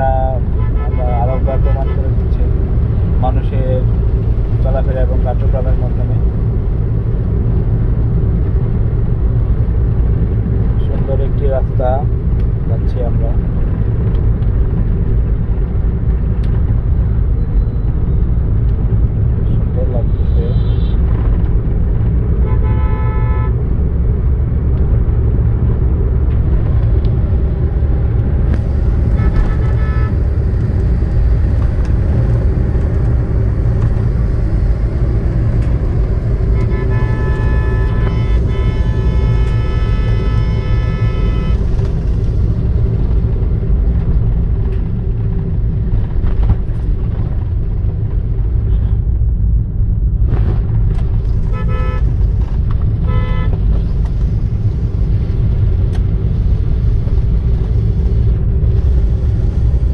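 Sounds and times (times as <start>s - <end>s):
car road and engine rumble: 0.0s - 59.9s
vehicle horns: 0.4s - 2.4s, 20.2s - 21.0s, 22.4s - 23.6s, 28.4s - 42.6s, 51.3s - 52.4s, 53.0s - 53.9s.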